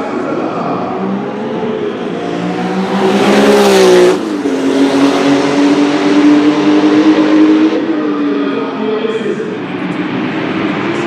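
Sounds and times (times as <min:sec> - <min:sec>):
race car accelerating past: 0:00.2 - 0:08.6.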